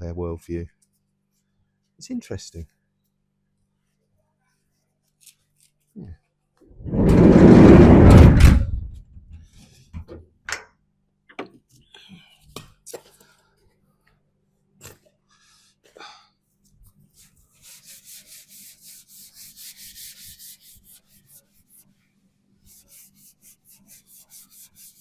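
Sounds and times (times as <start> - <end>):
hand sanding panel: 17.2 - 21.9, 22.7 - 25.0.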